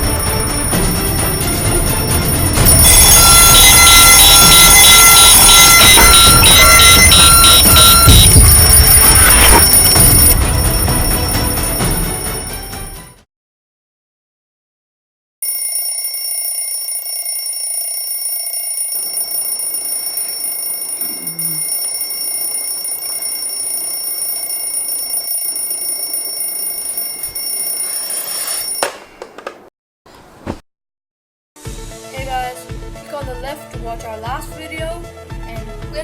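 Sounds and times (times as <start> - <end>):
alarm clock ringing: 0.0 - 13.1, 15.4 - 29.0.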